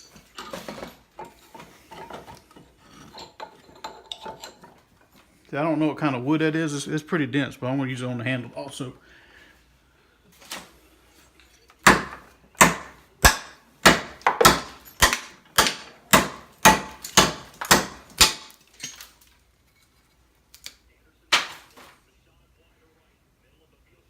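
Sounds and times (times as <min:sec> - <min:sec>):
cleaver chopping into wood: 0:11.8 - 0:18.5.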